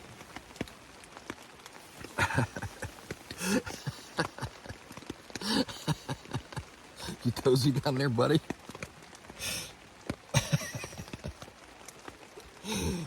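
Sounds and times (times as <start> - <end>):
light ticks: 0.0 - 5.5, 10.0 - 12.6.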